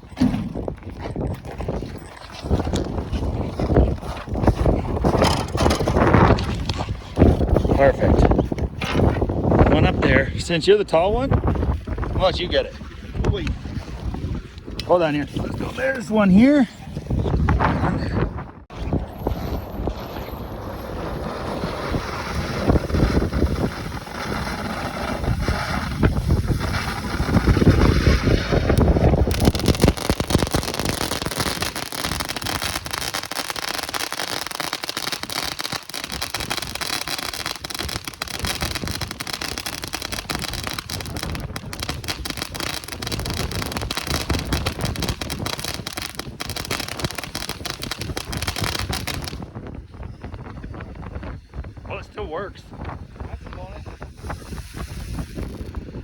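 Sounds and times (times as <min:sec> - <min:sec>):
wind buffeting microphone: 0:00.0 - 0:56.0
fountain firework crackling hiss: 0:20.6 - 0:49.4, 0:54.1 - 0:56.0.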